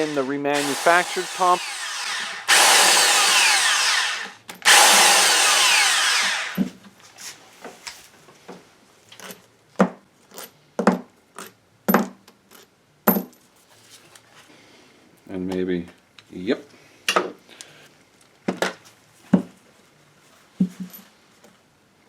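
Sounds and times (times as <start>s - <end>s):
power drill running: 0.0s - 6.7s.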